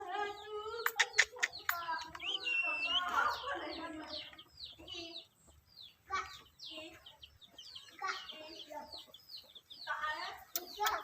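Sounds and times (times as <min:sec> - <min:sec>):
sharp clicks: 0:10.5 - 0:11.0.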